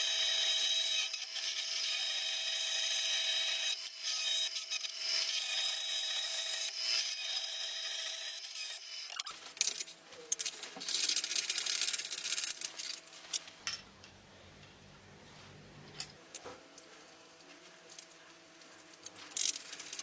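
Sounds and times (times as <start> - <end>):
faint low hum: 13.6 - 16.2.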